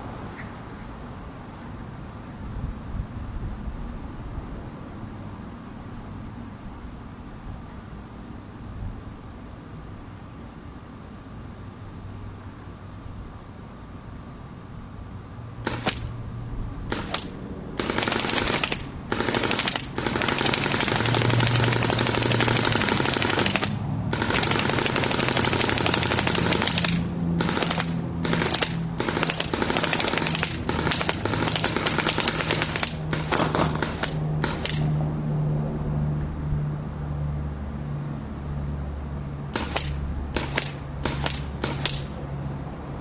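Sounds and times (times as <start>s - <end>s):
paintball marker rapid firing: 15.6s - 16.1s, 16.9s - 34.9s, 39.5s - 42.1s.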